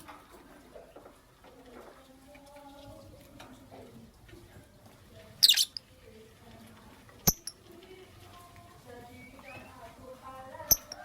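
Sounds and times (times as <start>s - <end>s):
lovebird chirping: 5.4s - 5.9s, 10.6s - 11.0s.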